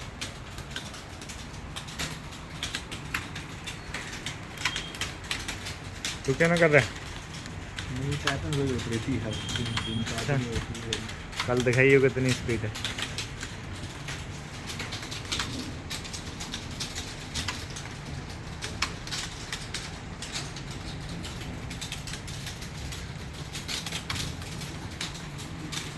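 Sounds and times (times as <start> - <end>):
keyboard typing clicks: 2.7 - 6.7, 7.8 - 12.5.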